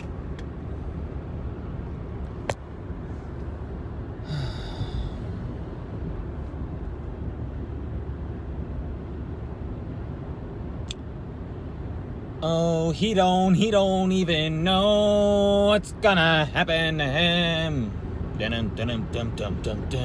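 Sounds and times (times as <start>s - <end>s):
car cabin road and engine rumble: 0.0s - 20.0s.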